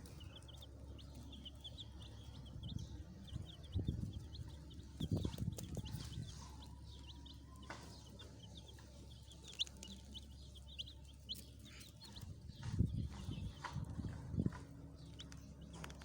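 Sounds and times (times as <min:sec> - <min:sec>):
baby chicks peeping: 0:00.0 - 0:16.0
dull low knocks: 0:10.0 - 0:16.0.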